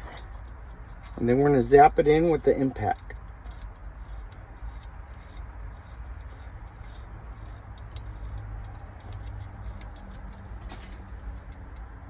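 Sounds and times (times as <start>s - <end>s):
hands scratching and rustling: 3.4s - 10.5s.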